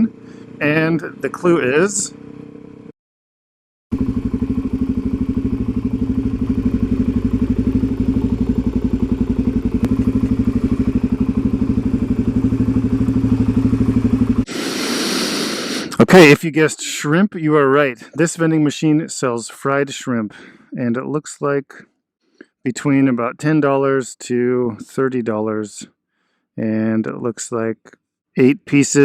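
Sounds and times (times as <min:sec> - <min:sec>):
engine idling: 0:03.9 - 0:14.5.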